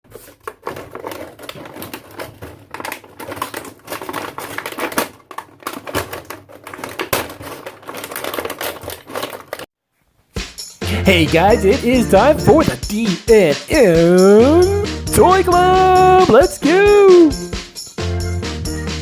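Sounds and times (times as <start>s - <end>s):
plastic toy tools clattering: 0.1s - 9.7s.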